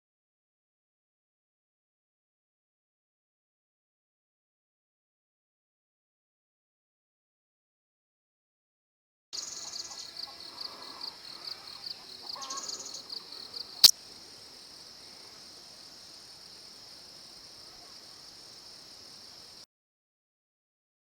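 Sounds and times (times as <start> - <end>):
insects chirping: 9.4 - 19.6
steady high insect buzz: 9.4 - 19.7.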